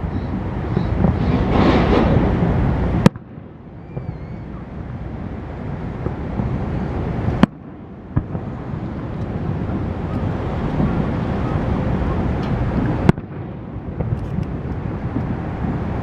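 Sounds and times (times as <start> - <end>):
noisy outdoor background: 0.0 - 16.0
fireworks bangs: 0.7 - 3.2.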